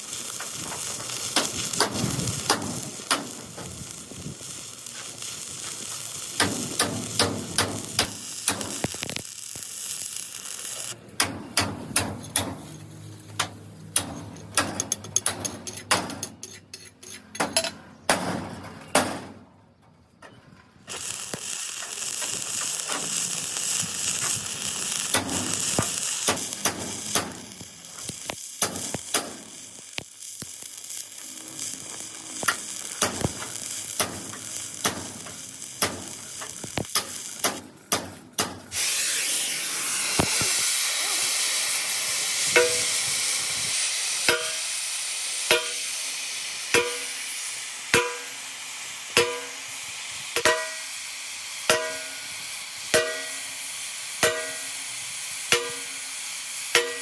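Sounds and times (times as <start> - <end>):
arc welding sizzle: 0.0 - 11.0, 20.9 - 57.0
metal tapping and clicking: 13.4 - 17.8.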